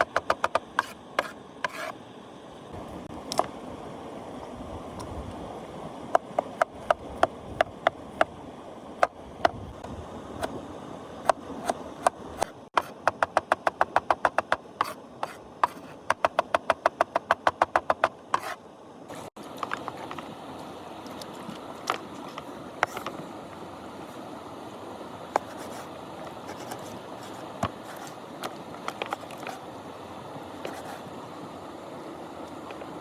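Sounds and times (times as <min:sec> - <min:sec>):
knife chopping on wooden board: 0:12.0 - 0:18.6.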